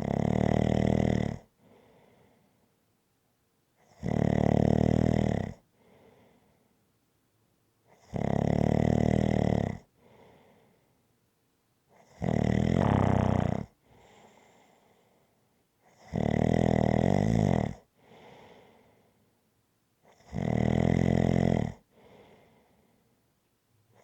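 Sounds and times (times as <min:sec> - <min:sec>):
loud snoring: 0:00.0 - 0:01.4, 0:12.2 - 0:13.7
soft breath out: 0:12.8 - 0:14.7, 0:18.0 - 0:19.0, 0:22.0 - 0:23.0.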